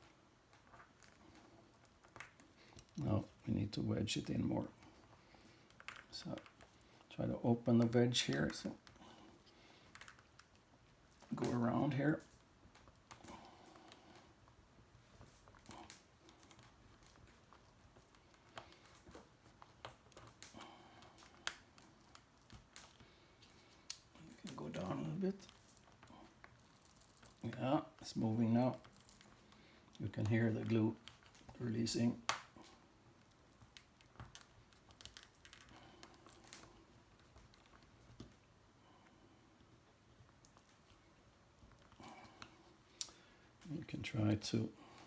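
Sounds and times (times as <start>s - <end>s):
adhesive crackling as pried: 32.2s - 37.9s.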